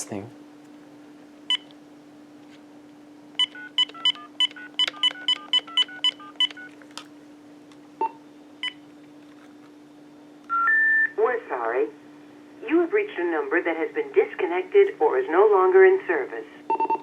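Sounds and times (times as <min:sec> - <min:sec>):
steady low hum: 0:00.0 - 0:17.0
phone touch-tone beeps: 0:03.4 - 0:06.7.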